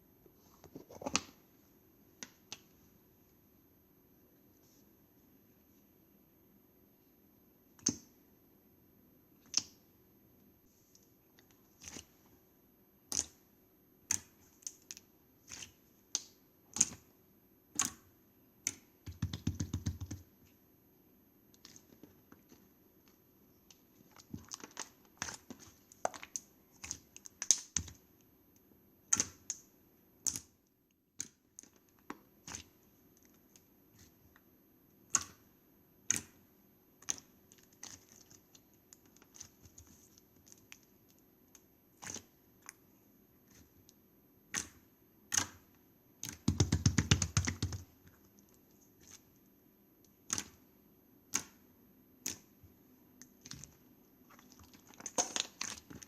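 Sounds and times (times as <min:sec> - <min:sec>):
ice slime crackling and popping: 0:53.4 - 0:56.0.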